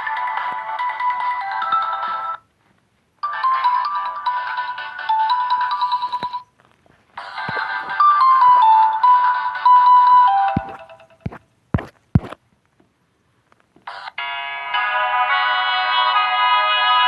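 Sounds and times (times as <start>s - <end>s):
phone ringtone melody: 0.0s - 2.4s, 3.2s - 6.5s, 7.2s - 11.4s.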